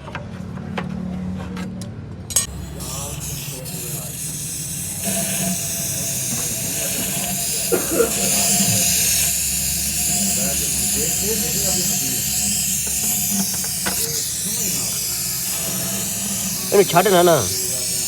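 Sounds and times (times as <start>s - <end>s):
steady hiss: 2.4s - 18.0s.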